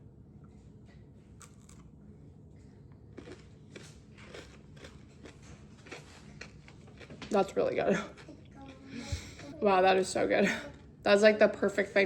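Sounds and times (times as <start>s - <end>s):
chocolate crunching while chewing: 1.4s - 2.0s, 3.0s - 7.3s.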